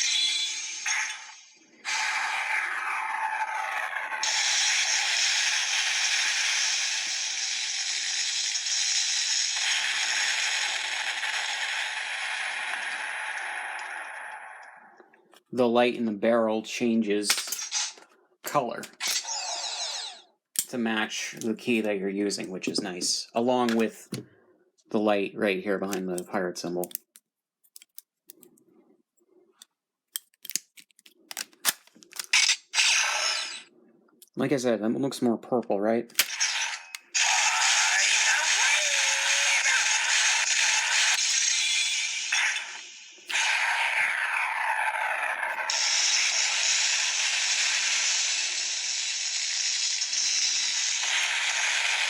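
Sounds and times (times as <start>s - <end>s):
toy blast sound effect: 0.0s - 14.0s, 17.3s - 18.0s, 18.9s - 20.3s, 32.2s - 33.7s, 36.1s - 52.0s
plastic toy gun clicks: 17.3s - 17.8s, 25.9s - 28.4s, 30.2s - 32.6s, 36.1s - 37.0s.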